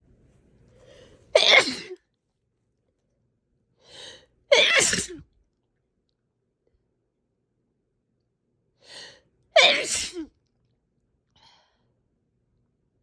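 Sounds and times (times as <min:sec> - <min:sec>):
person sneezing: 0:01.4 - 0:02.0, 0:04.5 - 0:05.2, 0:09.6 - 0:10.3.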